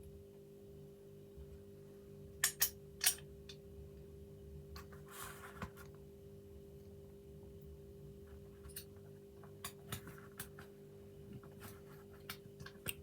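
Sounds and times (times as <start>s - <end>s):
small metal parts clicking: 2.4s - 3.2s.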